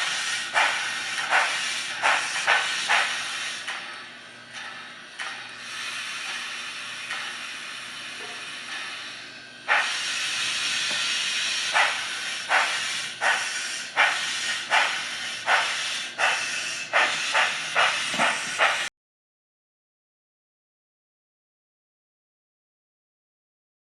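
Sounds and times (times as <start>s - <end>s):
steam hiss from small speaker: 0.0s - 3.9s, 5.3s - 18.9s
steam burst: 0.0s - 4.0s, 4.6s - 18.9s
locomotive exhaust chuffs: 0.0s - 18.9s.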